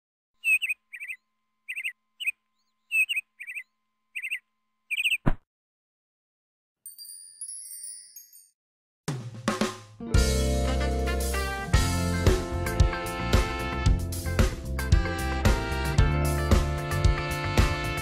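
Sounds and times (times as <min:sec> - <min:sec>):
high bird-like chirps: 0:00.4 - 0:05.4
shimmering chime: 0:06.8 - 0:08.6.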